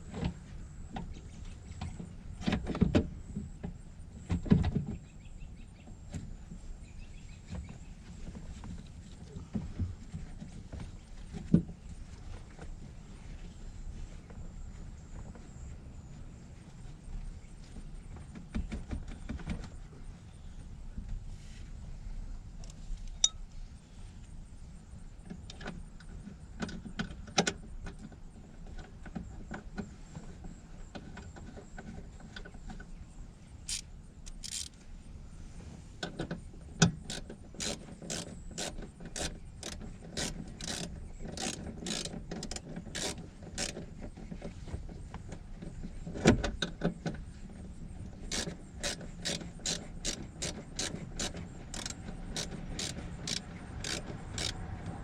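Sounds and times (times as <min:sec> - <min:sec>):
hand tool clicks: 0:33.7 - 0:34.8, 0:48.4 - 0:54.6.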